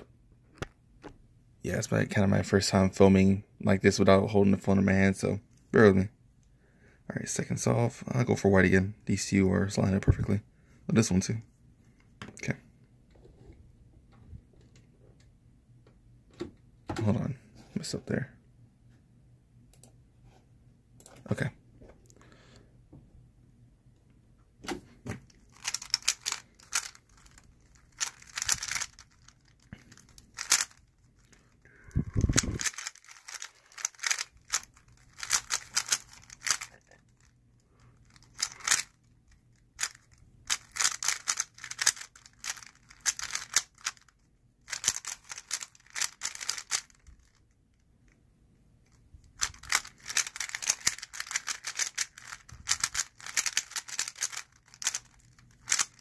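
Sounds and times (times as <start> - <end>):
plastic puzzle cube clicking: 25.6 - 29.3, 29.9 - 30.8, 32.2 - 36.8, 38.1 - 39.0, 39.8 - 44.1, 44.7 - 47.4, 49.4 - 56.0.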